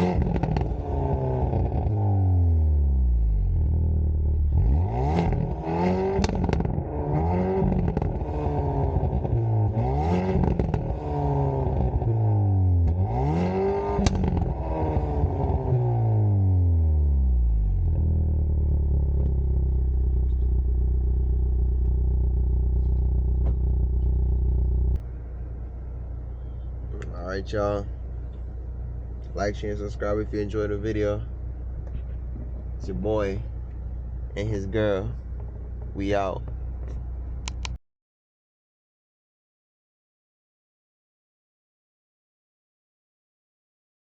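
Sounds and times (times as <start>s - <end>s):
exhaust crackles and pops: 0.0s - 2.0s, 5.2s - 12.2s, 12.8s - 15.8s, 17.8s - 25.1s, 35.0s - 37.8s
car engine revving: 0.0s - 37.6s
car engine idling: 5.3s - 37.7s.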